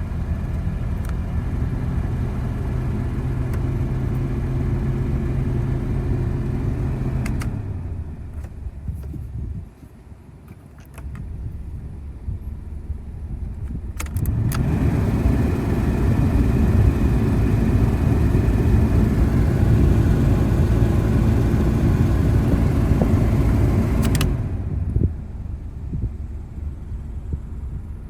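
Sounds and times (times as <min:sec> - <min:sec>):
car engine idling: 0:00.0 - 0:08.8, 0:12.0 - 0:28.0
air conditioning blower rushing: 0:10.9 - 0:28.0
switch clicks: 0:24.0 - 0:24.4.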